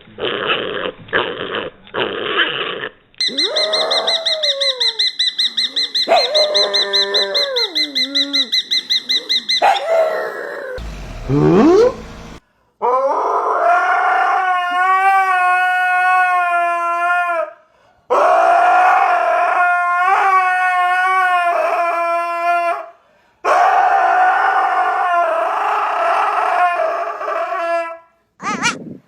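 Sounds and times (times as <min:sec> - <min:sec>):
dog howling: 0:03.3 - 0:05.0, 0:06.1 - 0:08.5, 0:09.6 - 0:22.9, 0:23.5 - 0:28.1.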